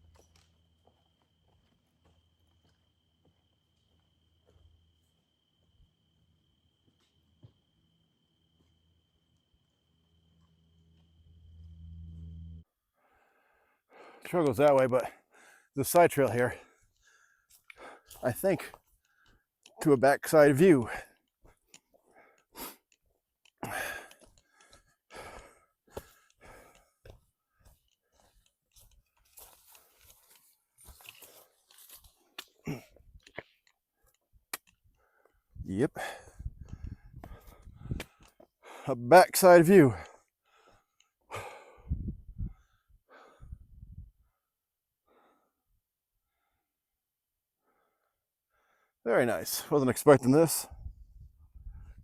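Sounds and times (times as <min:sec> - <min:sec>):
person breathing: 0:12.6 - 0:14.2, 0:15.1 - 0:15.8, 0:16.5 - 0:19.4, 0:20.8 - 0:22.9, 0:23.6 - 0:31.7, 0:35.0 - 0:38.9, 0:39.9 - 0:46.7, 0:47.6 - 0:49.0
person breathing hard and sighing: 0:23.6 - 0:28.4, 0:36.0 - 0:38.9, 0:39.9 - 0:43.8
footsteps crunching dry leaves: 0:28.2 - 0:32.3.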